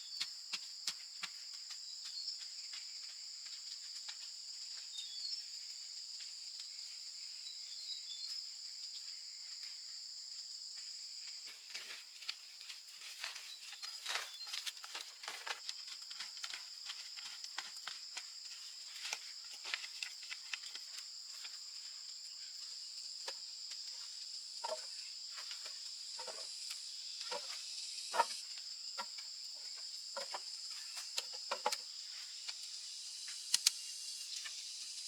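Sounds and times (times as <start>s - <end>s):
high-pitched insect drone: 24.6s - 35.0s.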